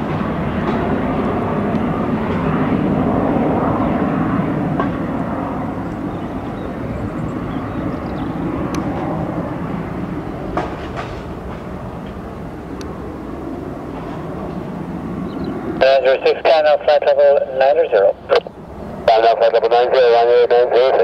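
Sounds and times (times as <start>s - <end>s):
jet engines at takeoff thrust: 0.0s - 21.0s.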